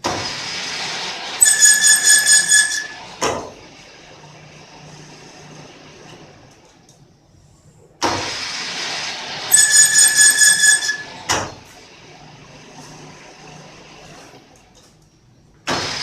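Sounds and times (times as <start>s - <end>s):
lathe tool squealing on metal: 1.4s - 3.2s, 9.5s - 11.2s.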